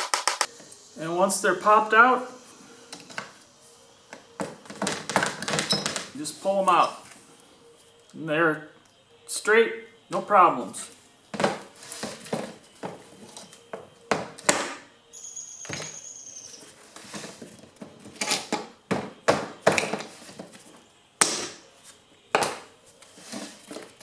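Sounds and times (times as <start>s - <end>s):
knocks and clicks of handled parts: 0.0s - 0.5s
thin high squeak: 15.2s - 16.8s.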